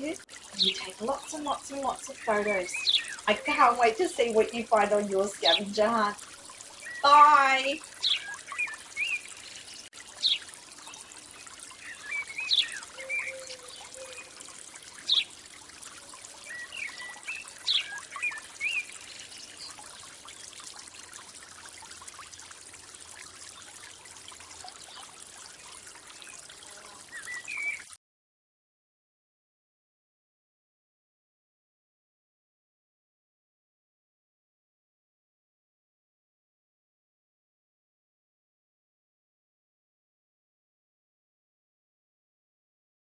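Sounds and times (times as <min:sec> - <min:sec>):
birds chirping: 0:00.0 - 0:20.6, 0:23.5 - 0:27.9
stream trickling: 0:00.0 - 0:28.0.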